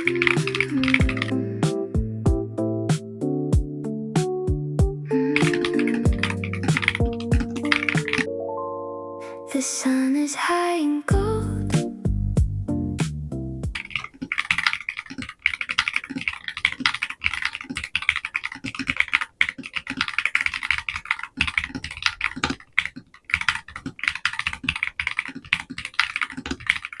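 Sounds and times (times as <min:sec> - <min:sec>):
mechanical keyboard typing: 0:00.0 - 0:01.3, 0:05.1 - 0:08.3, 0:13.8 - 0:27.0.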